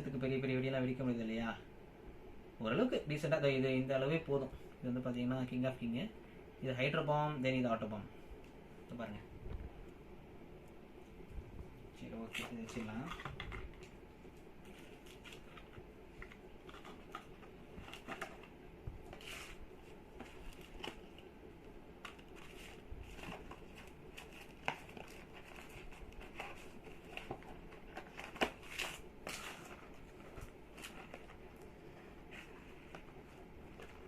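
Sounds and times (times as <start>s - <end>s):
cardboard and paper crinkling: 14.6s - 21.2s, 22.0s - 34.0s.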